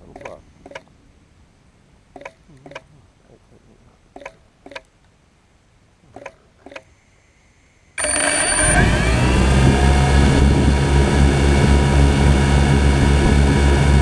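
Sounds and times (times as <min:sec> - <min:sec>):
faint steady tone: 0:00.0 - 0:08.8
drone short beeps: 0:08.0 - 0:10.6
drone rotors spinning: 0:08.0 - 0:14.0.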